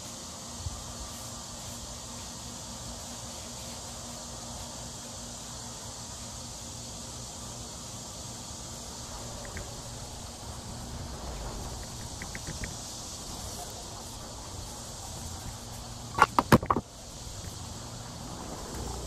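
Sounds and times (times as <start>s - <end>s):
high-pitched insect drone: 0.0s - 19.0s
faint ticks: 9.1s - 9.9s, 11.3s - 12.8s
sharp knocks: 16.1s - 16.8s.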